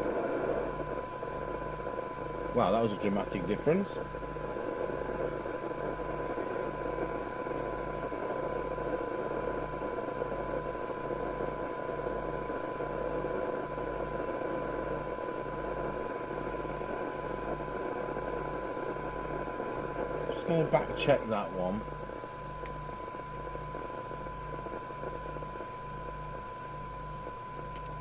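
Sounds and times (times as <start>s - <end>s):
pulsing low hum: 0.0s - 28.0s
radio receiver hiss: 0.0s - 28.0s
weak steady test tone: 0.0s - 28.0s.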